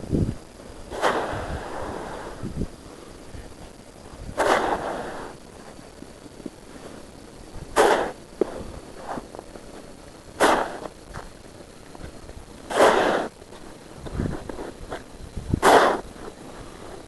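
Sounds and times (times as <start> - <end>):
snow shovel scraping: 0.9 - 2.4, 4.4 - 5.4, 7.7 - 9.4, 10.4 - 11.2, 12.7 - 17.0.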